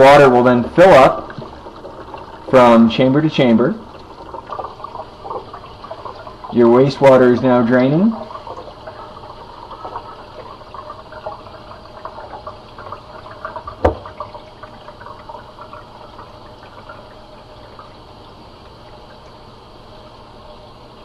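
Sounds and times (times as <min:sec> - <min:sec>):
water trickling into sink: 0:00.0 - 0:21.0.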